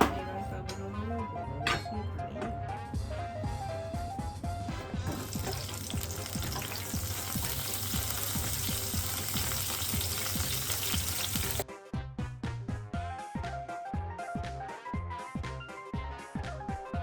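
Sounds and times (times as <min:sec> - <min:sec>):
background music with steady beat: 0:00.0 - 0:17.0
food sizzling in a frying pan: 0:05.1 - 0:11.6.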